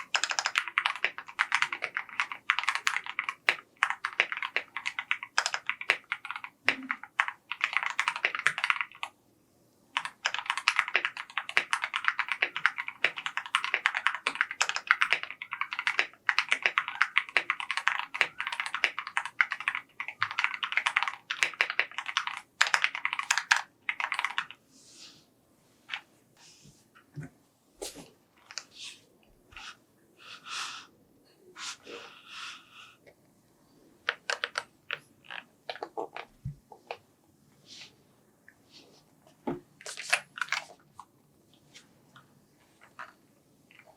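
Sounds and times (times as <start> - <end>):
typing on mechanical keyboard: 0.0 - 9.2, 10.0 - 24.6, 34.0 - 36.3.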